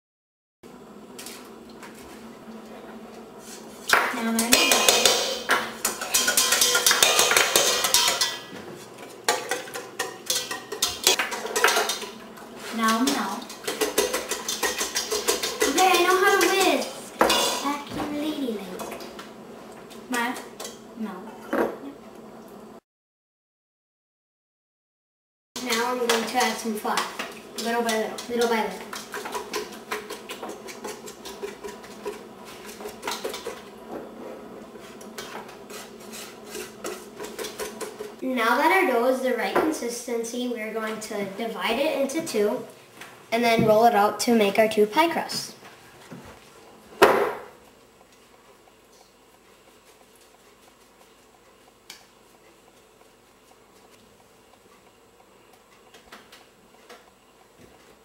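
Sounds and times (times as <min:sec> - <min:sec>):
metal utensils clattering on pot: 0:04.4 - 0:12.2, 0:12.8 - 0:17.7, 0:25.6 - 0:33.7.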